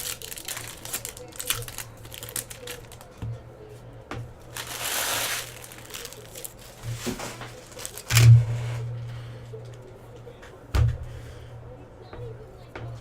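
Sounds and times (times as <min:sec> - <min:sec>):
foil wrapper crinkling: 0:00.0 - 0:03.2, 0:04.4 - 0:08.3
steady low hum: 0:00.0 - 0:13.0.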